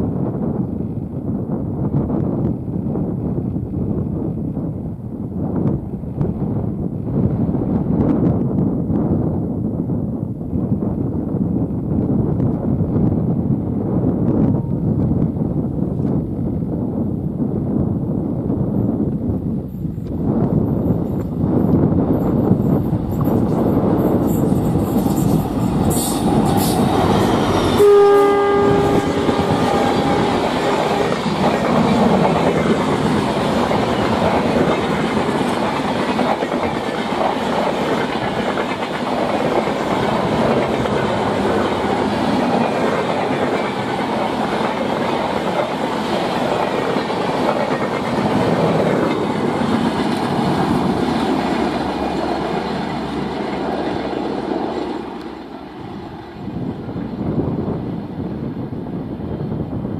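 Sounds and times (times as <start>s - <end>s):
train coaches rumbling: 11.7s - 59.9s
train horn: 25.9s - 31.4s
clickety-clack of wheels: 31.0s - 45.8s.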